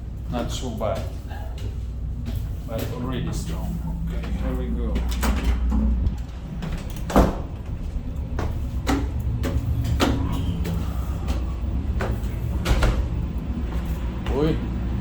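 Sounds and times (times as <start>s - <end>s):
low rumble of ship in wind: 0.0s - 15.0s
sharp knocks and clatters: 8.3s - 13.2s.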